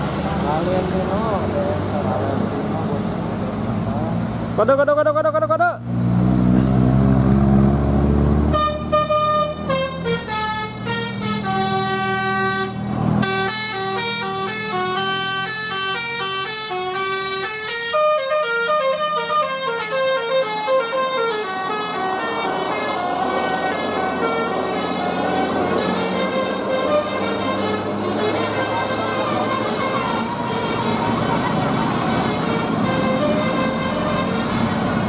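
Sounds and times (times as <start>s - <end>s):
bus engine: 0.0s - 35.0s
multi-tone bus horn tune: 8.4s - 35.0s.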